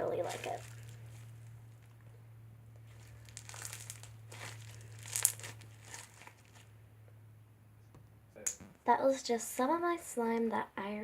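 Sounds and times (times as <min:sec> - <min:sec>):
foam slime crackling: 0:00.0 - 0:01.8, 0:02.9 - 0:06.7
low steady hum: 0:00.0 - 0:11.0.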